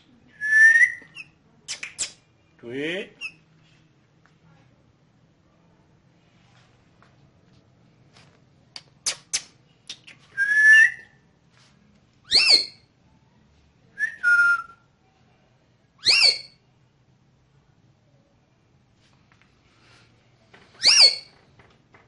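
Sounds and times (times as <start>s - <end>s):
parrot whistled calls: 0.4s - 1.4s, 10.4s - 11.1s, 12.3s - 12.8s, 16.0s - 16.6s, 20.8s - 21.3s.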